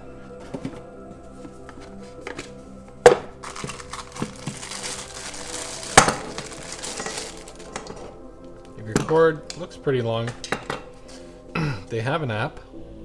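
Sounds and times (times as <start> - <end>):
soft background music: 0.0 - 13.0
packaging crinkling: 1.7 - 8.2.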